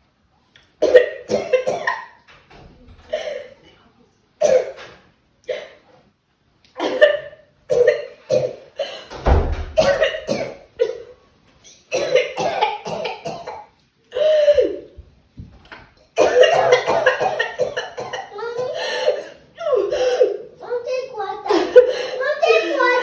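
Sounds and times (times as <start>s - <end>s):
person coughing: 0.8s - 2.0s, 3.1s - 3.6s, 6.8s - 9.2s, 9.8s - 11.1s, 11.9s - 14.8s, 16.2s - 20.4s, 21.5s - 23.0s.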